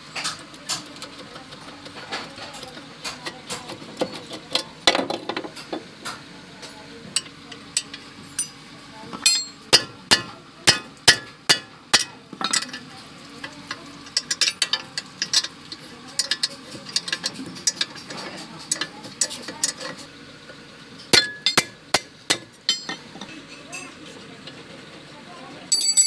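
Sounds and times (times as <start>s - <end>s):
hammer blows on metal: 9.3s - 12.2s, 21.2s - 23.0s
light metallic taps and clinks: 13.4s - 15.5s, 21.2s - 23.2s.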